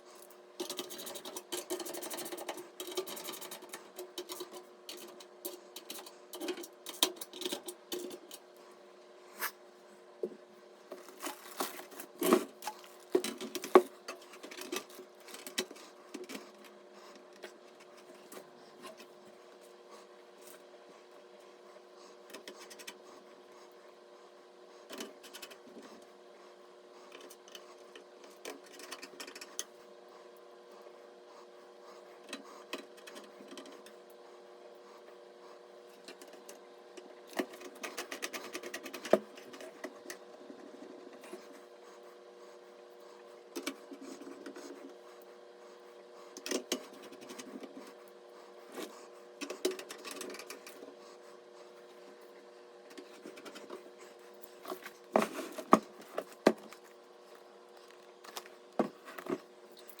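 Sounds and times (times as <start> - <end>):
faint steady hum: 0.0 - 60.0
computer parts clicks and scrapes: 0.2 - 8.4.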